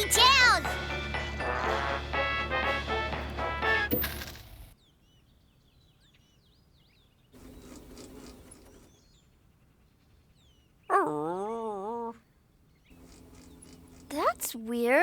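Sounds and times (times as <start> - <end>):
television music: 0.0 - 4.0
cartoon birdsong chirps: 10.9 - 12.2
wavering hmm voice: 10.9 - 12.2.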